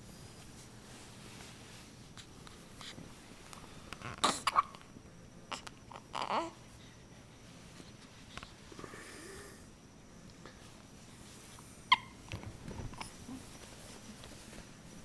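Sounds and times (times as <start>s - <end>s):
baby hiccuping: 4.1s - 4.8s, 11.9s - 12.2s
faint breathing: 6.7s - 9.8s.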